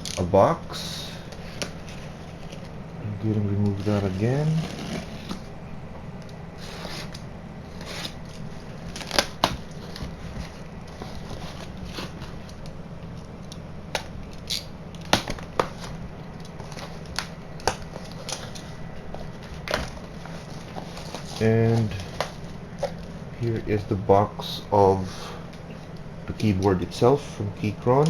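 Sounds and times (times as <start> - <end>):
low steady hum: 0.0 - 28.0
packaging rustling and tearing: 6.6 - 23.3.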